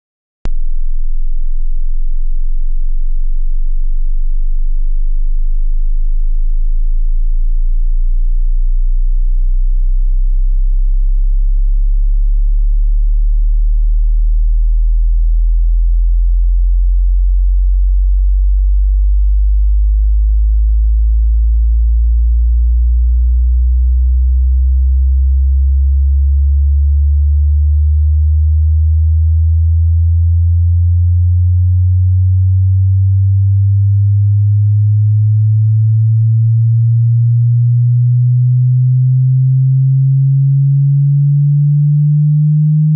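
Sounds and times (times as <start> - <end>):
sine tone sweeping upward: 34.0 - 42.9.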